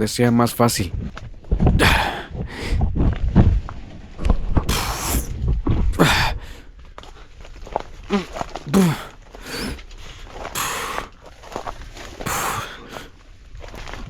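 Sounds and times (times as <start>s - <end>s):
footsteps among roots: 0.0s - 14.0s
rustling vegetation: 0.0s - 14.0s
man grunting: 1.8s - 2.3s, 6.0s - 6.5s, 8.1s - 9.7s, 12.3s - 12.8s
man breathing effortfully: 1.8s - 3.0s, 4.7s - 7.4s, 8.1s - 13.2s.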